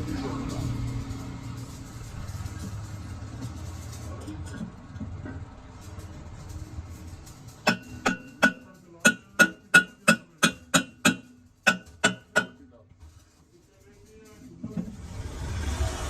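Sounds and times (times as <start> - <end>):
low machine rumble: 0.0 - 7.6
hammer blows on metal: 7.6 - 12.6.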